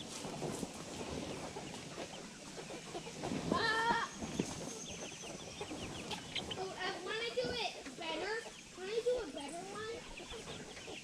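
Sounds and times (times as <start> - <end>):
chickens clucking: 0.0 - 11.0
chicken squawk: 9.6 - 11.0.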